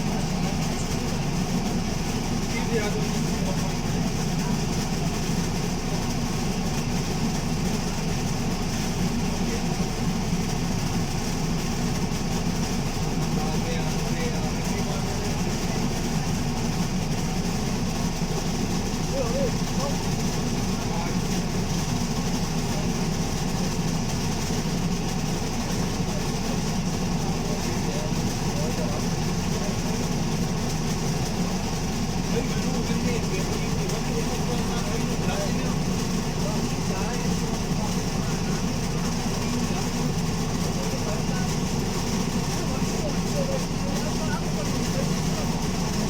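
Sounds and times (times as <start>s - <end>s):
bus engine rumbling: 0.0s - 8.0s, 11.9s - 46.0s.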